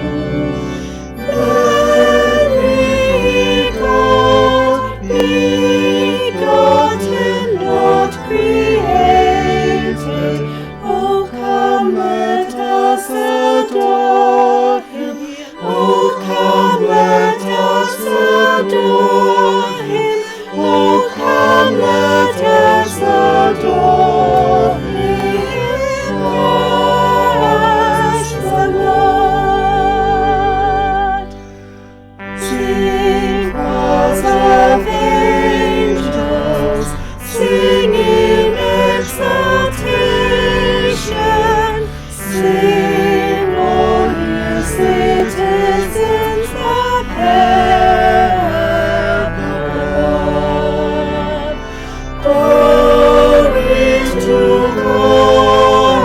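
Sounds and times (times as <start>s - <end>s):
choir singing: 0.0s - 56.0s
low organ notes: 0.0s - 56.0s.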